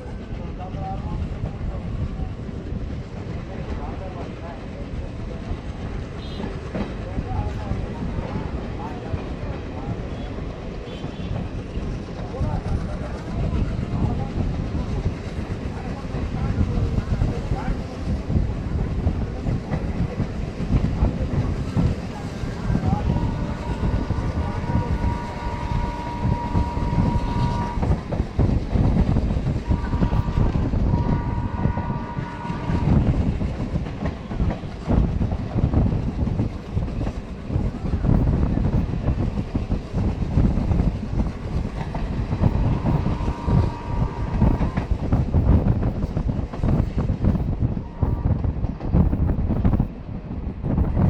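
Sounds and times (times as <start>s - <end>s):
diesel locomotive engine chugging: 0.0s - 49.8s
locomotive horn blasts: 23.0s - 27.9s, 29.6s - 33.0s, 42.6s - 44.8s.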